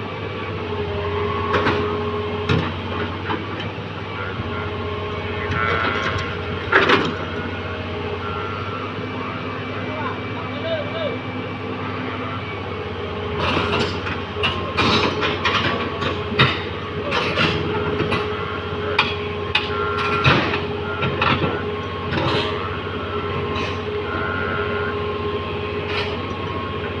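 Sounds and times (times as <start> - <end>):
heavy machine humming: 0.0 - 27.0
metal clanks and knocks: 13.4 - 22.6.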